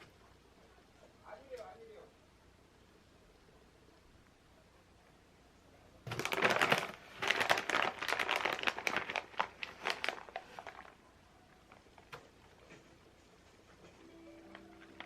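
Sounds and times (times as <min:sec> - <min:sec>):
crinkling and rustling: 0:06.0 - 0:15.0.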